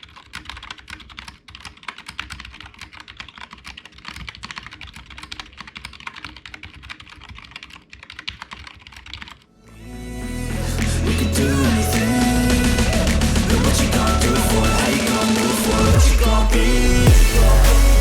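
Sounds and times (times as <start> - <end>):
mechanical keyboard typing: 0.0 - 9.4
music: 9.6 - 18.0.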